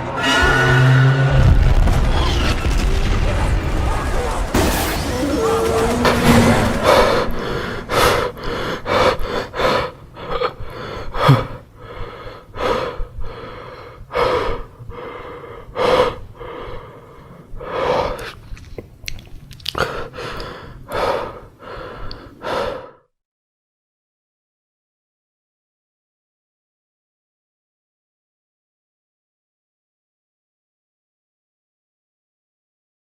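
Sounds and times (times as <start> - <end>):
heavy gasping breaths: 6.5 - 18.6, 19.7 - 23.1.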